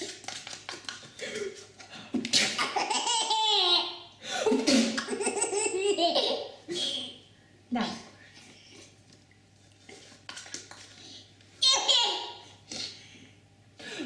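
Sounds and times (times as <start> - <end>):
baby laughing hard: 2.6 - 4.0, 5.0 - 6.6.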